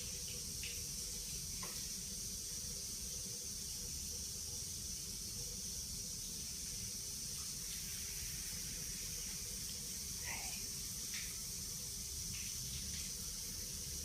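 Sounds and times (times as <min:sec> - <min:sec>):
steady hiss: 0:00.0 - 0:14.0.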